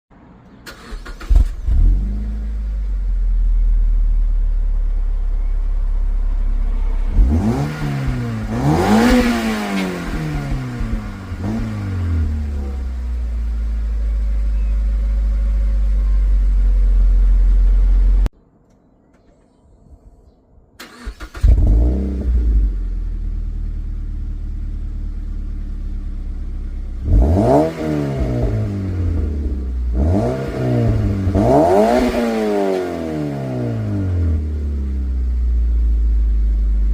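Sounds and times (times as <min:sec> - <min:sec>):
car engine idling: 0:00.4 - 0:18.3, 0:20.8 - 0:27.5
engine starting: 0:00.6 - 0:01.8, 0:20.8 - 0:22.1
engine revving: 0:00.7 - 0:18.3, 0:20.8 - 0:35.4.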